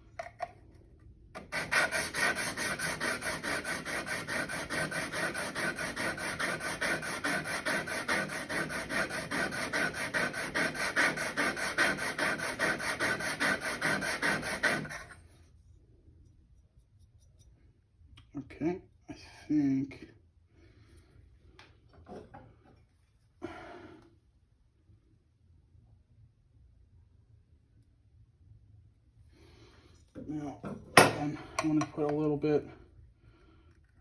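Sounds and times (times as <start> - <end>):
blade scraping on sharpening stone: 1.4 - 15.2.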